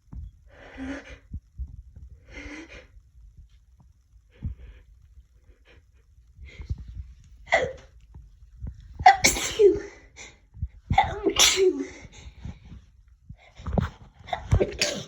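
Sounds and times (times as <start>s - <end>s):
person sneezing: 9.1s - 10.0s, 11.0s - 12.0s, 14.4s - 15.0s.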